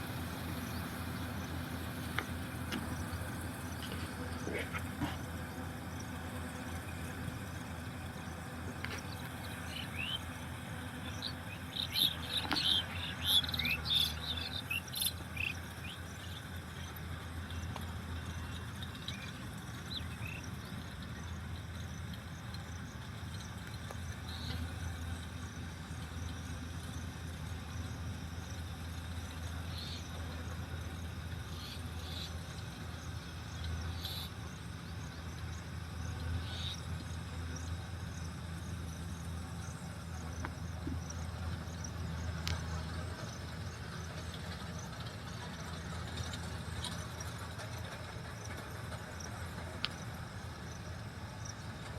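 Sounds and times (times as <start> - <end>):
combine harvester engine humming: 0.0 - 51.9.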